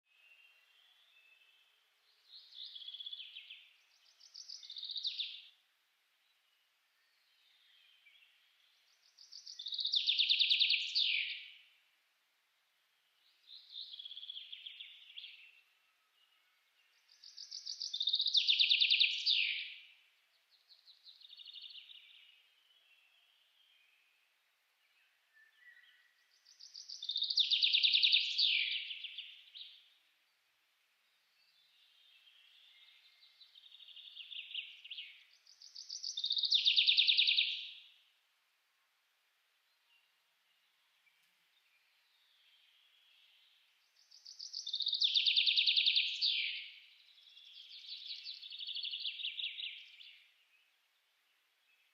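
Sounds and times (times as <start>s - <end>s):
bird singing trilled phrases: 2.2s - 5.5s, 7.2s - 11.7s, 17.0s - 19.9s, 20.7s - 23.9s, 25.0s - 29.9s, 31.3s - 38.0s, 41.8s - 50.4s.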